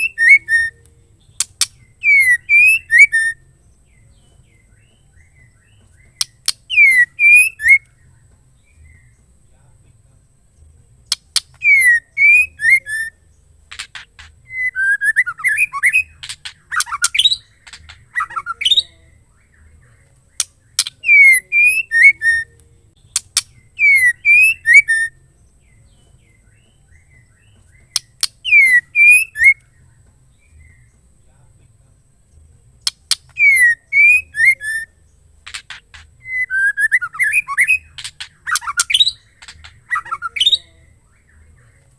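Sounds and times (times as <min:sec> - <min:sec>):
bird sharp clicks: 0:00.0 - 0:03.3, 0:05.7 - 0:08.0, 0:11.1 - 0:12.8, 0:13.7 - 0:18.9, 0:20.3 - 0:25.1, 0:27.4 - 0:29.7, 0:32.8 - 0:34.6, 0:35.4 - 0:40.6
bird whistled notes: 0:00.0 - 0:08.0, 0:11.1 - 0:19.6, 0:20.4 - 0:25.3, 0:26.2 - 0:29.7, 0:32.8 - 0:41.5.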